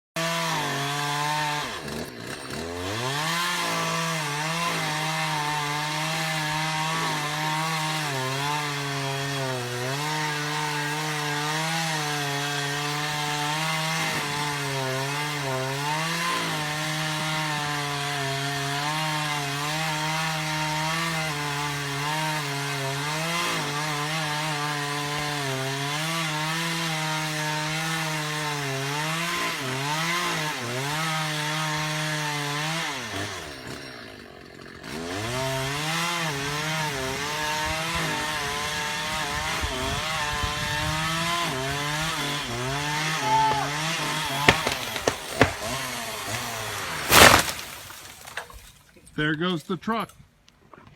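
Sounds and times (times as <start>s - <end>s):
chainsaw cutting wood: 0.0s - 49.5s.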